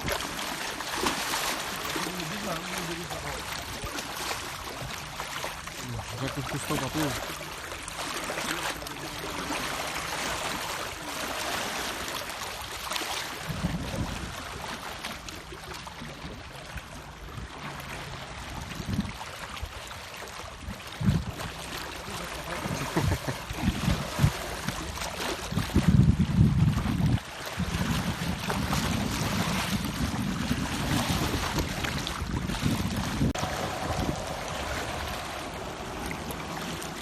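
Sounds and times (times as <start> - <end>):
seawater splashing: 0.0 - 37.0
wind buffeting microphone: 13.4 - 15.2, 17.1 - 19.8, 20.4 - 37.0.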